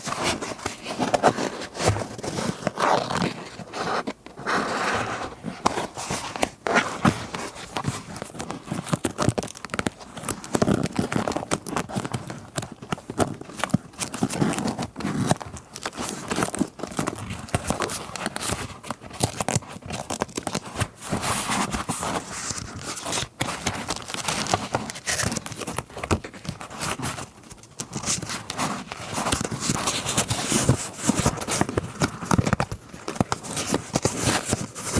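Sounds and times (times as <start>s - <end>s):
paper rustling and crinkling: 0.0s - 34.9s
small taps and scratches: 0.0s - 34.9s.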